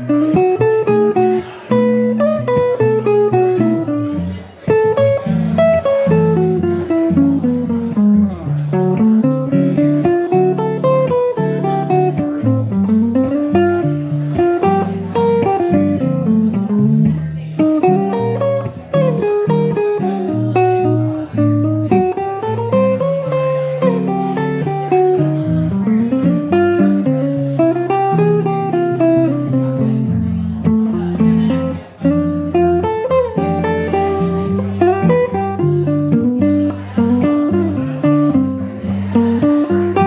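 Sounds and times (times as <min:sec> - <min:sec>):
electric guitar played fingerstyle: 0:00.0 - 0:40.0.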